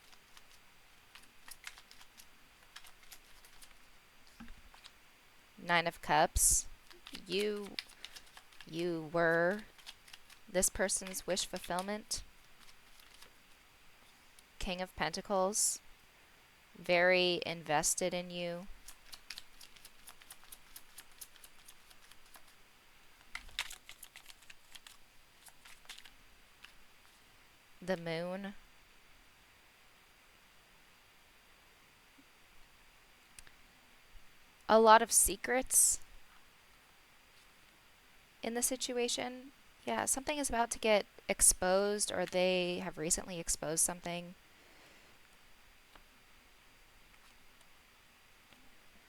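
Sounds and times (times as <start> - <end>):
tarot cards shuffling: 0.0 - 5.0, 6.4 - 13.4, 18.7 - 22.6, 23.2 - 27.2.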